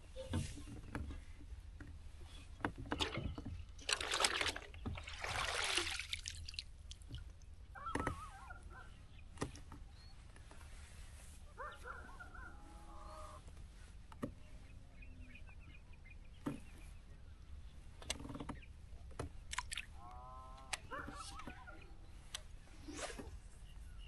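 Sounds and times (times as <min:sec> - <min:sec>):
water splashing around kayak: 0:02.8 - 0:07.3
bird calling: 0:07.7 - 0:09.2, 0:11.6 - 0:13.4, 0:19.9 - 0:22.3.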